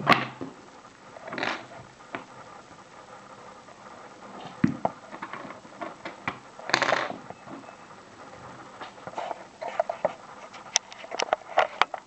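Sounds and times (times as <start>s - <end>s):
small clicks and handling noises: 8.8s - 12.0s.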